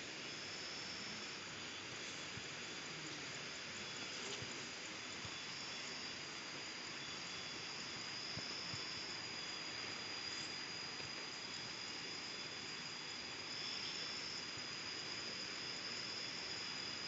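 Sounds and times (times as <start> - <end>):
insects chirring: 0.0 - 17.0
soft background hiss: 0.0 - 17.0.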